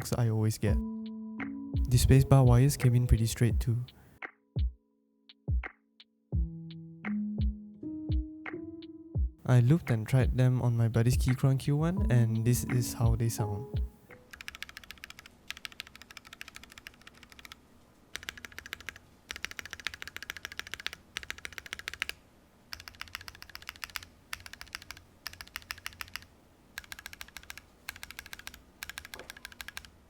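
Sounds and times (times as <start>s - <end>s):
mechanical keyboard typing: 14.3s - 30.0s.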